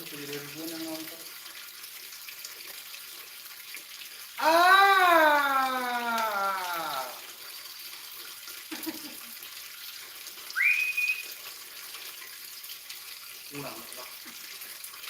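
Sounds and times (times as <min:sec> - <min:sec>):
short rising whistle: 0:10.6 - 0:11.3.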